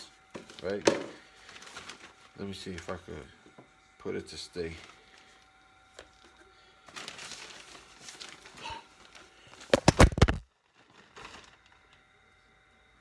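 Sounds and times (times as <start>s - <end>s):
phone being handled: 9.7s - 10.4s.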